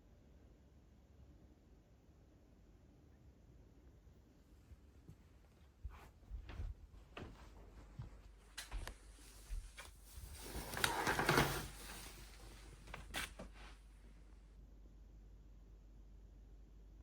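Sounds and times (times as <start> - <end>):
rustling scrape: 9.2 - 13.8.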